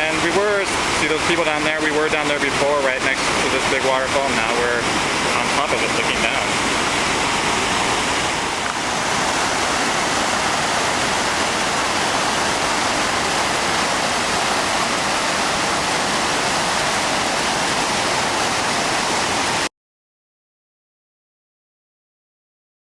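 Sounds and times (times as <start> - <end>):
waterfall rushing: 0.0 - 19.7.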